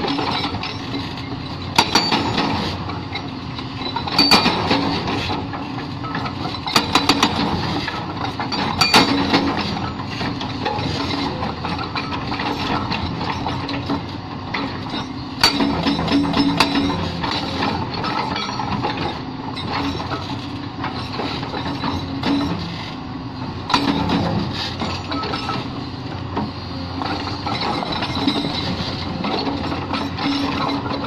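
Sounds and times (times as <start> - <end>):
hydraulic rock breaker rattling: 0.0 - 22.9, 27.0 - 31.0
excavator engine drone: 0.0 - 31.0
metallic clinks on rock: 4.2 - 4.6.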